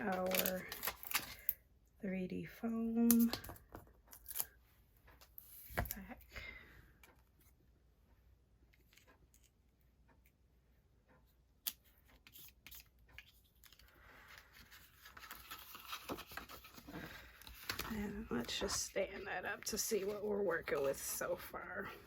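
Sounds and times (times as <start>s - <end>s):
paper rustling: 0.0s - 1.5s, 12.2s - 21.6s.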